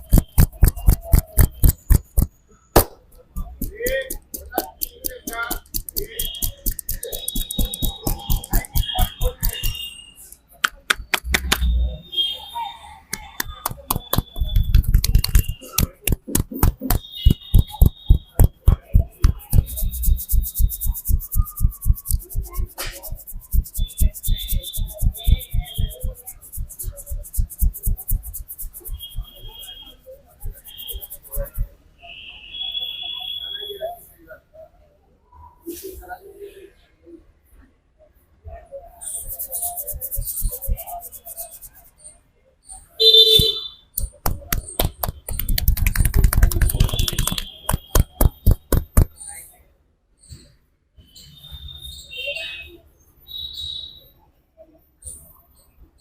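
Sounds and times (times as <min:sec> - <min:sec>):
hands slapping on head: 0:00.0 - 0:09.8, 0:10.6 - 0:11.7, 0:13.1 - 0:29.5, 0:30.4 - 0:31.7, 0:43.4 - 0:49.1.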